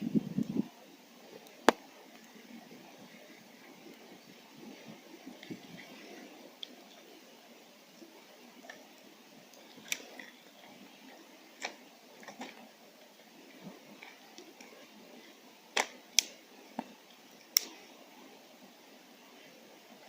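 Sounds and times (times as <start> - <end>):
faint steady background noise: 0.0 - 20.0
sharp clicks and pops: 1.6 - 2.3, 15.8 - 17.8.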